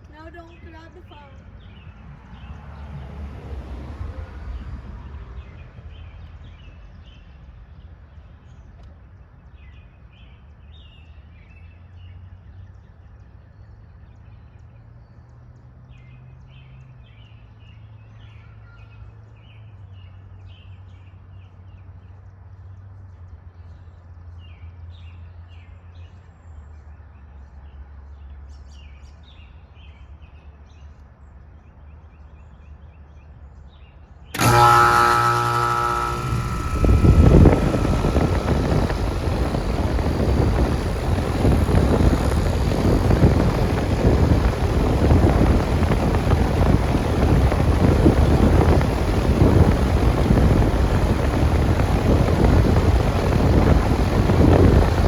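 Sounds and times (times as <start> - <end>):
low outdoor rumble: 33.1 - 55.0
loud humming machine: 34.4 - 55.0.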